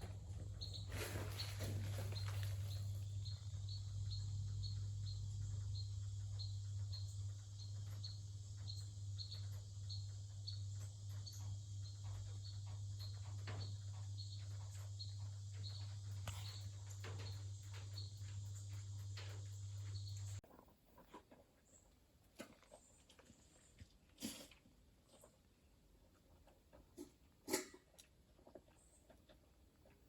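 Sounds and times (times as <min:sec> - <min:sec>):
constant low hum: 0:00.0 - 0:30.0
insect chirping: 0:02.2 - 0:20.4.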